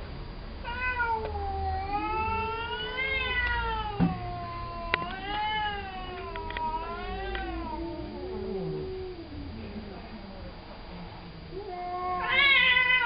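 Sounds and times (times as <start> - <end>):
cat yowling: 0.6 - 9.5, 11.6 - 13.0.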